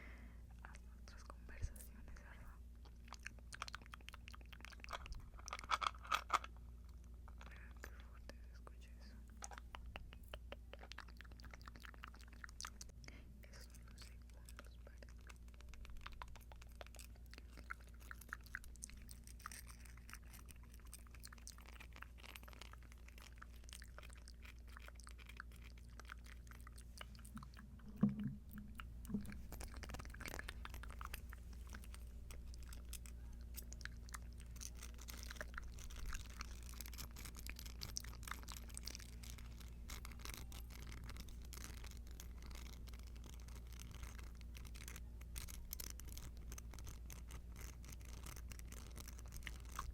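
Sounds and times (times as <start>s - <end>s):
earrings clicking and crackling: 13.5s - 49.9s.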